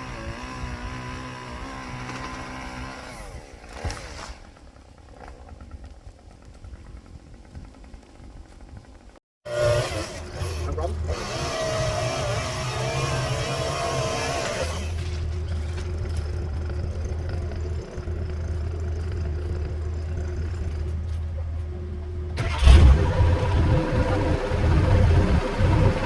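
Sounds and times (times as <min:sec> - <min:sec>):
louder engine running: 0:09.5 - 0:26.0
engine low muffled hum: 0:14.6 - 0:26.0.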